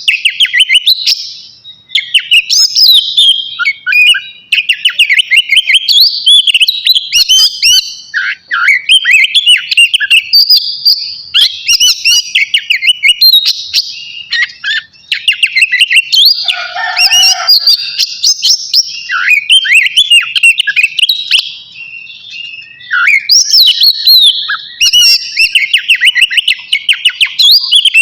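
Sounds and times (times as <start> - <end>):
bird singing whistled phrases: 0.0 - 28.0.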